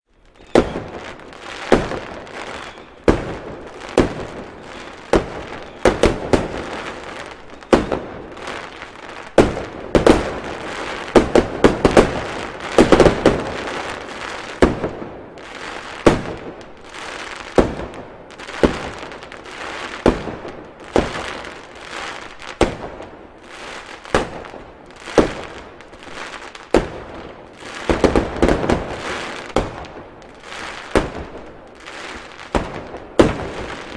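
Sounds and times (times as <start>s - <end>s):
fireworks bangs crackling: 0.1s - 33.9s.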